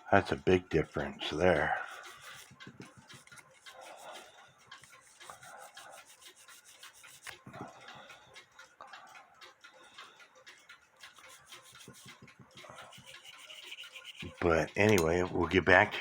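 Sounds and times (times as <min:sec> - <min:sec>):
brush scrubbing metal: 0:01.2 - 0:07.4, 0:11.0 - 0:14.5.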